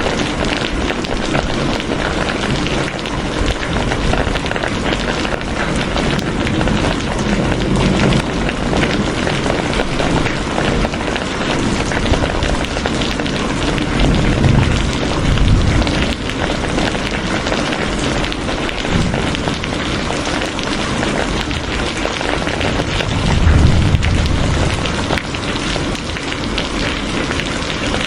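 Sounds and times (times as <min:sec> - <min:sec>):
heavy rain pattering: 0:00.0 - 0:28.0
low rumbling: 0:22.6 - 0:26.5.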